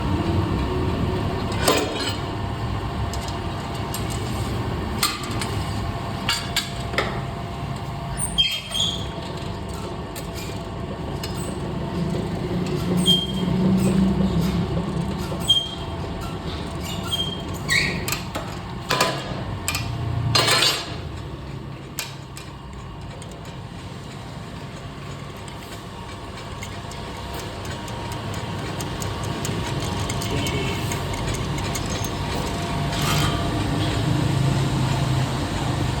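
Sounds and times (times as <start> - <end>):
metallic clicks and knocks: 17.5 - 34.0.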